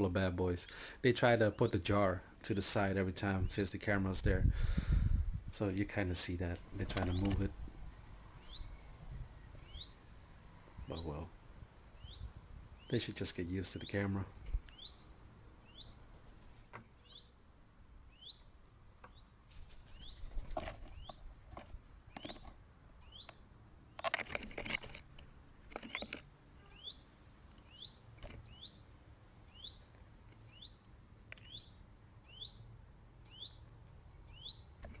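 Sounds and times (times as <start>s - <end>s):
birds knocking and rustling: 6.6s - 8.7s, 19.0s - 22.6s, 24.0s - 26.3s, 28.1s - 28.6s
small bird chirping: 6.8s - 10.2s, 11.9s - 13.0s, 13.8s - 17.4s, 18.1s - 21.4s, 22.0s - 24.6s, 25.7s - 35.0s.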